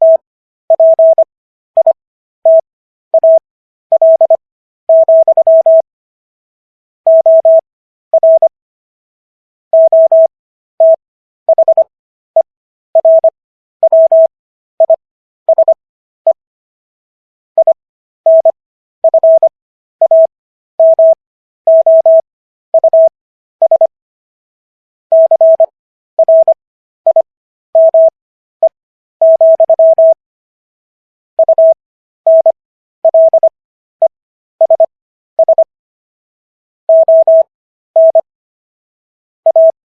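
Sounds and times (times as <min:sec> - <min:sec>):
morse code beeping tone: 0:00.0 - 0:00.2, 0:00.8 - 0:02.6, 0:03.2 - 0:05.8, 0:07.1 - 0:07.6, 0:08.2 - 0:08.5, 0:09.8 - 0:11.9, 0:13.0 - 0:16.4, 0:17.6 - 0:22.2, 0:22.8 - 0:23.9, 0:25.1 - 0:28.2, 0:29.2 - 0:30.2, 0:31.4 - 0:35.7, 0:36.9 - 0:38.3, 0:39.5 - 0:39.8.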